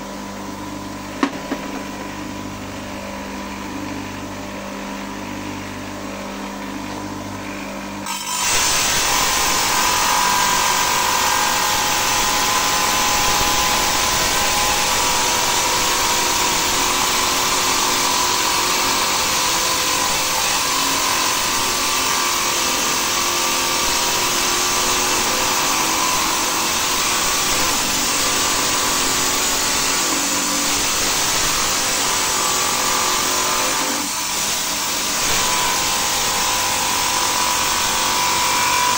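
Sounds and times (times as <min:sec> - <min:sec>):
stone saw grinding stone: 0:08.0 - 0:38.9.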